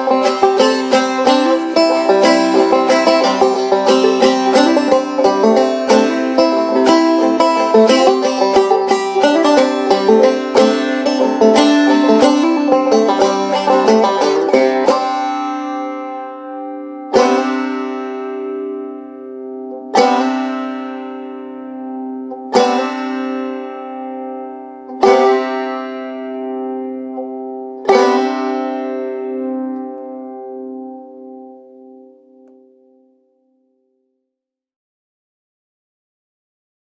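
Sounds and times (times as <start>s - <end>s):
rapid banjo picking: 0.0s - 32.7s.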